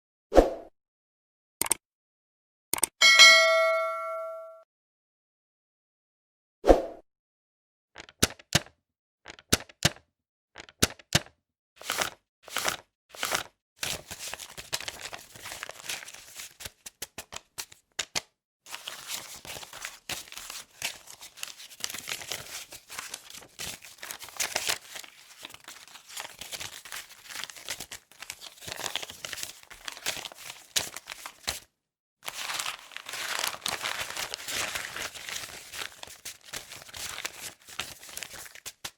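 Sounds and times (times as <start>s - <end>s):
paper money crumpling: 11.8s - 18.1s, 18.7s - 38.9s.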